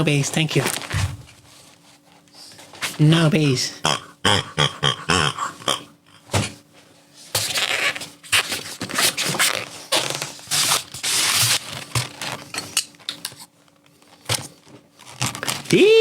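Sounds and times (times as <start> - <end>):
rustling and scraping: 0.2 - 3.0, 6.7 - 15.7.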